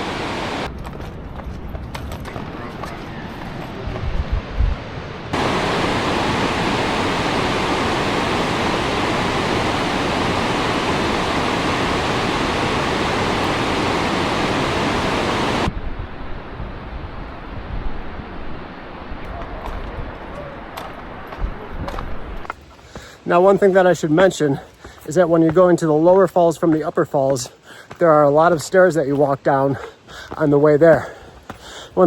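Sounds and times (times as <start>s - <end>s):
waterfall roaring: 0.0s - 0.7s, 5.0s - 15.7s.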